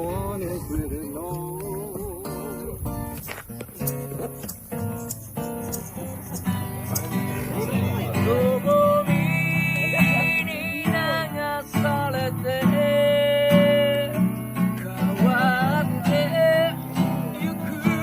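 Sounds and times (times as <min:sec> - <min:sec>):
man singing: 0:00.0 - 0:03.2, 0:06.9 - 0:18.0
strummed acoustic guitar: 0:00.0 - 0:18.0.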